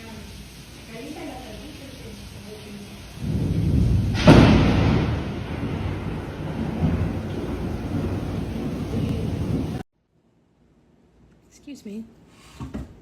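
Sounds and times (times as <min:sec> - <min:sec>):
sharp loud crack: 0:03.2 - 0:08.1
low rumbling: 0:03.2 - 0:09.8.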